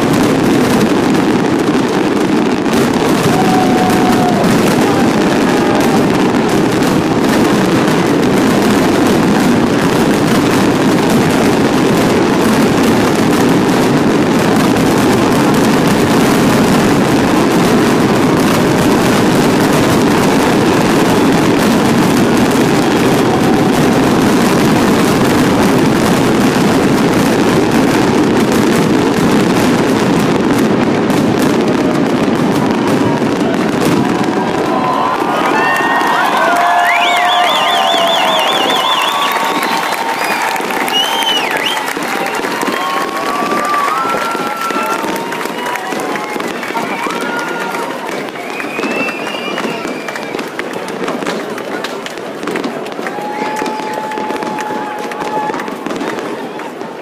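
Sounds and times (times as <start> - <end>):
crowd cheering: 0.0 - 57.0
fireworks bursts and crackling: 0.0 - 57.0.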